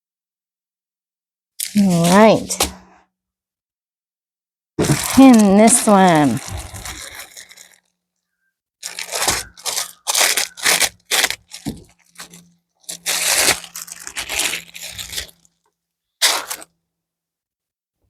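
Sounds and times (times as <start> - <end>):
plastic packaging crinkling: 4.8 - 8.0, 8.8 - 16.7.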